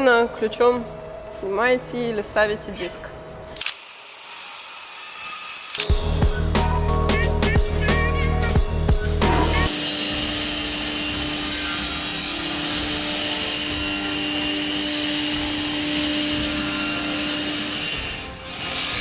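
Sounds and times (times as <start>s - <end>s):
circular saw cutting wood: 3.7s - 5.9s, 9.2s - 19.0s.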